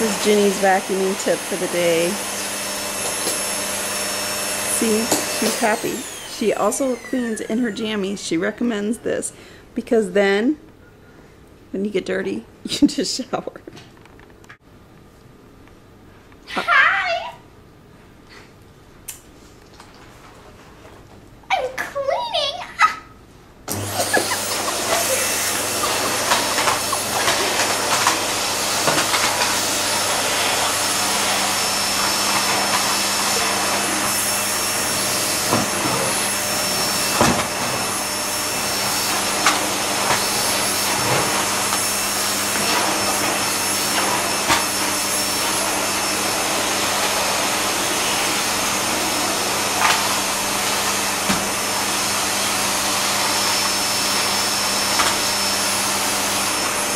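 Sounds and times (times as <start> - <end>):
vacuum cleaner humming: 0.0 - 9.4, 23.7 - 56.9.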